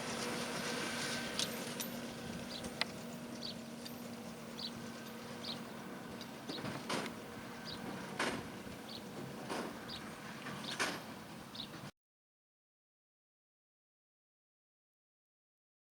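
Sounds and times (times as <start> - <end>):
baler steady hum: 0.0 - 11.9.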